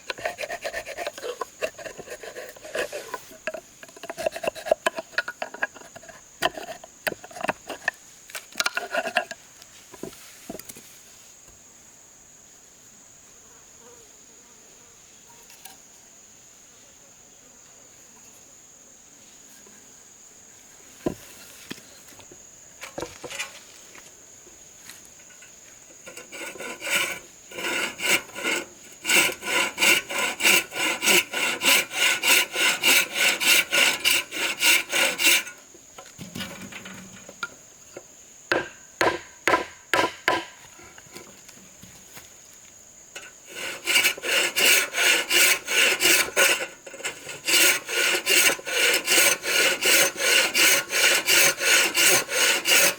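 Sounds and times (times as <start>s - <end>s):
hand tool rubbing on wood: 0.0s - 6.8s, 26.0s - 35.6s, 43.2s - 52.9s
insects droning: 0.0s - 52.9s.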